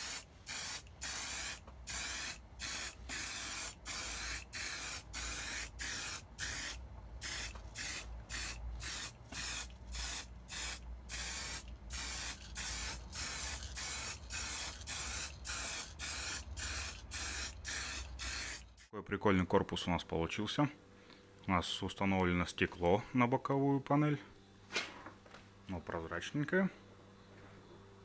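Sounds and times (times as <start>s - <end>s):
spray-paint can hissing: 0.0s - 18.9s.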